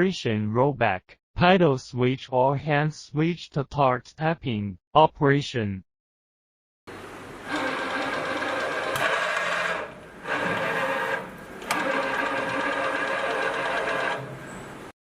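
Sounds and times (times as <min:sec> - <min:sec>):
machine spindle motor whir: 0:06.9 - 0:14.9
sharp machine clicks: 0:07.5 - 0:14.4.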